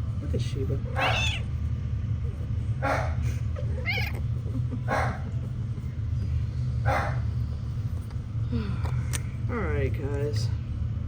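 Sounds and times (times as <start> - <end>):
steady low hum: 0.0 - 11.0
cat meowing: 1.0 - 1.5, 3.6 - 4.2.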